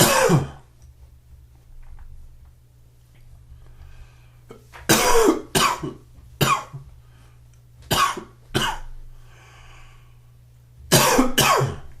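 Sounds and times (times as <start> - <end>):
man coughing: 0.0 - 0.6, 4.9 - 6.8, 7.9 - 8.9, 10.9 - 11.9.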